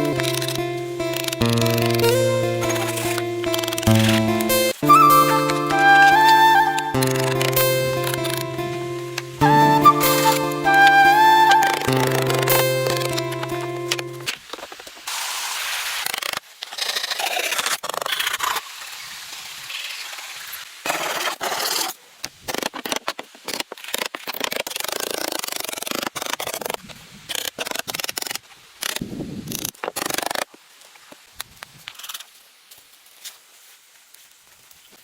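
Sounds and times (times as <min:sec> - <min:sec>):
rough scraping and rubbing: 0:00.2 - 0:04.7.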